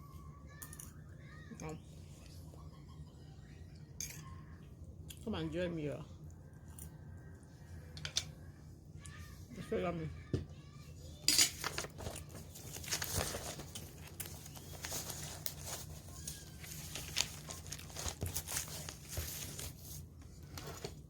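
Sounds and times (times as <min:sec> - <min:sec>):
low steady hum: 0:00.0 - 0:21.0
crinkling and rustling: 0:11.5 - 0:21.0.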